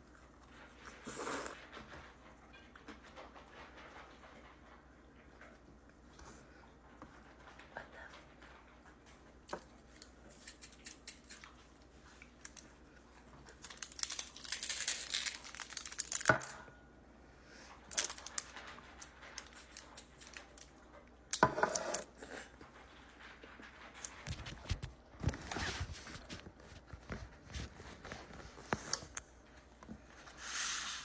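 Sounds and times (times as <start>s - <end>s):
food wrapping crinkling and tearing: 9.9s - 16.6s, 17.7s - 20.8s, 23.9s - 29.3s.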